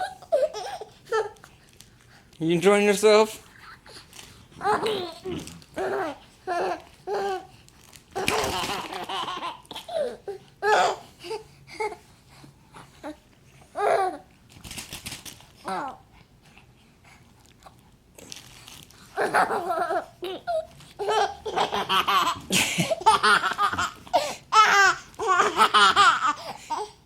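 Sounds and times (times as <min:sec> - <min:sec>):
baby giggling and babbling: 0:00.0 - 0:01.4, 0:04.6 - 0:07.5, 0:08.2 - 0:12.0, 0:19.2 - 0:22.4
baby breathy laugh: 0:08.2 - 0:12.0, 0:19.2 - 0:27.0.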